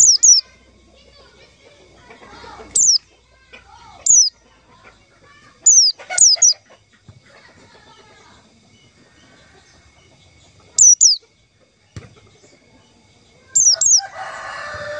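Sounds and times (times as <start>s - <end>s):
bird calling high downslurred notes: 0.0s - 0.5s, 2.6s - 3.1s, 4.0s - 4.4s, 5.6s - 6.6s, 10.8s - 11.2s, 13.5s - 14.2s.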